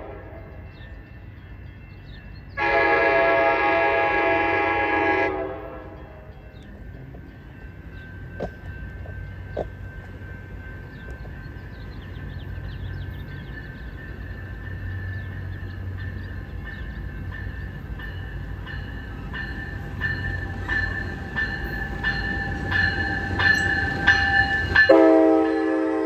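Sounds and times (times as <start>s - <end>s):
train horn chord: 0.0s - 0.8s, 2.6s - 6.4s, 24.6s - 26.0s
crossing bell ringing: 0.0s - 26.0s
train rumble: 0.0s - 26.0s.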